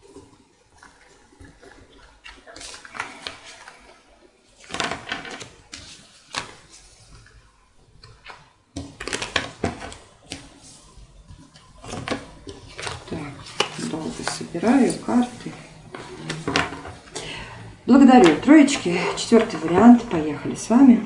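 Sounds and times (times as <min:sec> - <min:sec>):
cards clicking and slapping: 0:04.6 - 0:07.4, 0:08.0 - 0:10.6.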